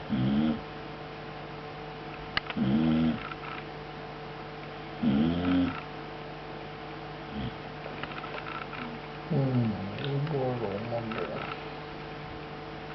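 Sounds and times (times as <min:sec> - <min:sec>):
pet snoring: 0:00.0 - 0:00.6, 0:02.5 - 0:03.6, 0:05.0 - 0:05.9, 0:07.3 - 0:07.6
steady low hum: 0:00.0 - 0:12.9.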